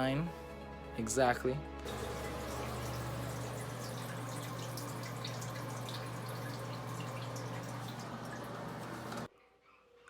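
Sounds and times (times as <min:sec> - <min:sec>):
water running and dripping: 0:01.9 - 0:09.3.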